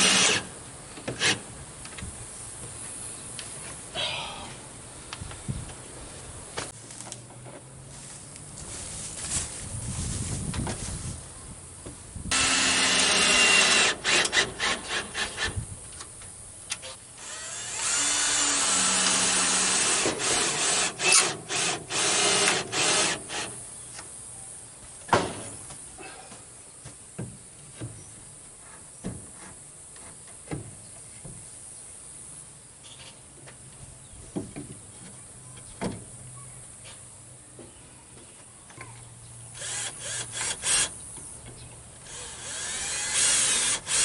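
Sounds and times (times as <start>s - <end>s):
power drill drilling wood: 0.0s - 0.4s, 12.3s - 15.5s, 17.2s - 23.5s, 39.6s - 40.9s, 42.1s - 44.0s.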